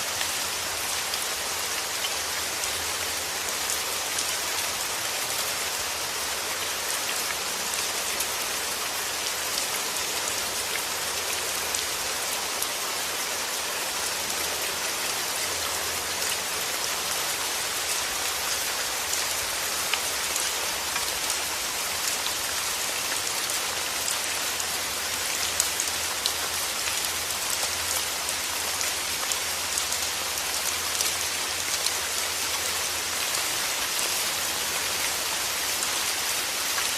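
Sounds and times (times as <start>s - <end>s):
steady rain falling: 0.0s - 36.9s.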